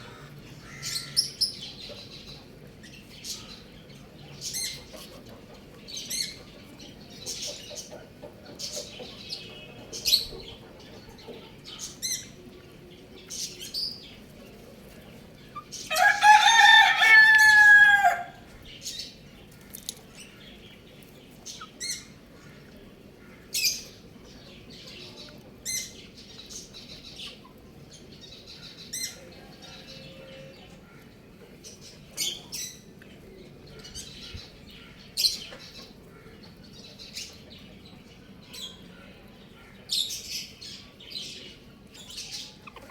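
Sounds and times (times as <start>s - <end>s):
chicks peeping: 0.0s - 42.9s
rooster crowing: 15.9s - 18.4s.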